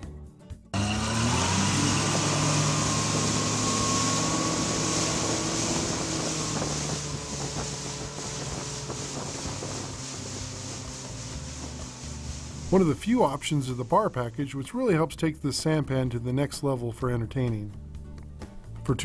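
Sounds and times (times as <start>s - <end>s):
outboard engine drone: 0.8s - 15.0s
wind and water rushing: 0.8s - 15.0s.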